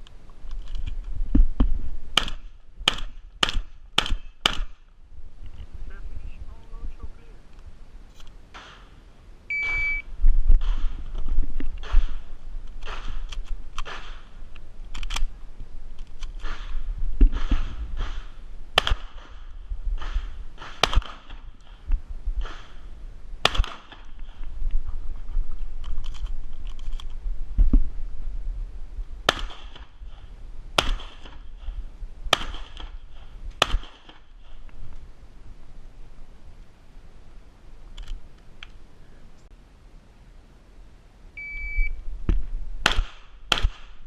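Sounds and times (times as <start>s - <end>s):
shotgun shots: 2.2s - 4.8s, 11.8s - 14.3s, 16.4s - 21.4s, 23.4s - 24.1s, 29.3s - 29.9s, 30.8s - 31.4s, 32.3s - 32.9s, 33.6s - 34.3s, 42.8s - 44.0s.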